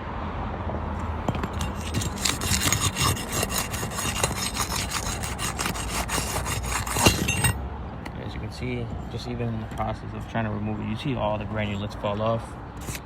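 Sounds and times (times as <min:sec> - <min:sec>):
shingle scraping and crackling: 0:01.1 - 0:07.6, 0:12.8 - 0:13.0.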